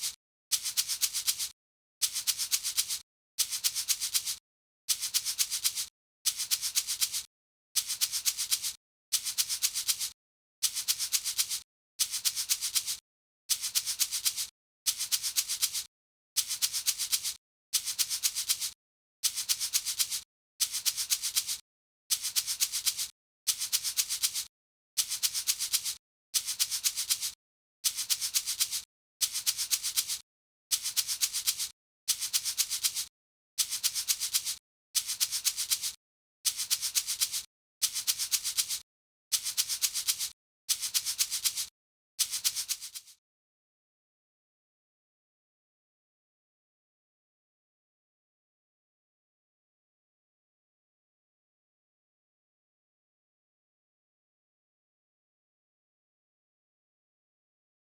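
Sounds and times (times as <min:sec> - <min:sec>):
salt shaker rattling: 0:36.5 - 0:38.8, 0:39.4 - 0:41.6, 0:42.2 - 0:43.1.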